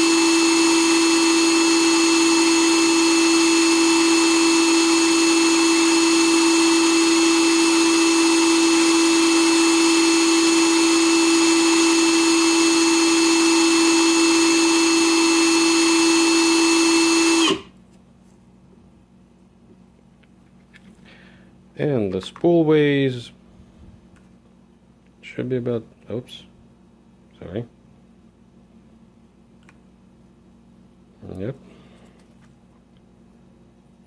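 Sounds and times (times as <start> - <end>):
power tool motor whining: 0.0 - 17.7.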